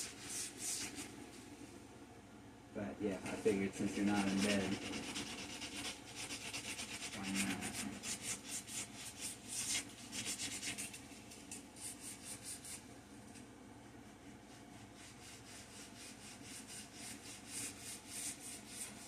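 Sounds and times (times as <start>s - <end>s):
sandpaper rubbing on wood: 3.4s - 11.0s, 11.8s - 12.8s, 14.7s - 19.0s.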